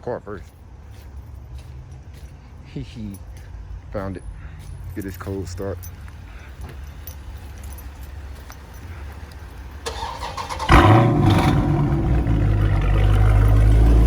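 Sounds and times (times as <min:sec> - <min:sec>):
car engine idling: 0:03.7 - 0:14.0.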